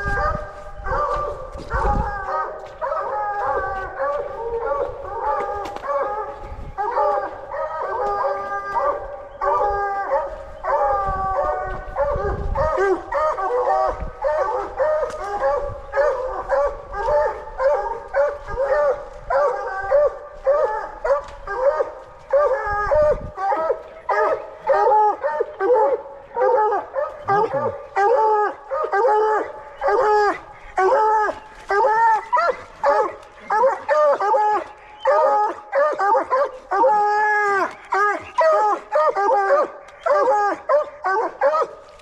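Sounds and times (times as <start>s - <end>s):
hounds baying and barking: 0.0s - 42.0s.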